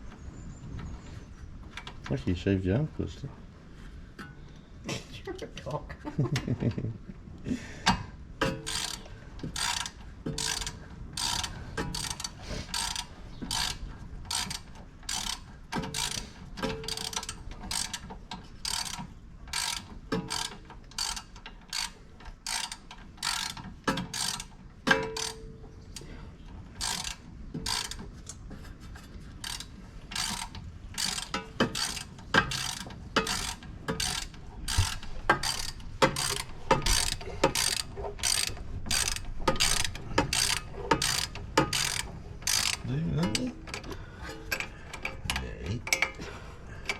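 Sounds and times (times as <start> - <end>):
ratchet wrench clicking: 8.4 - 18.0, 18.7 - 25.4, 26.8 - 28.0, 29.4 - 42.8.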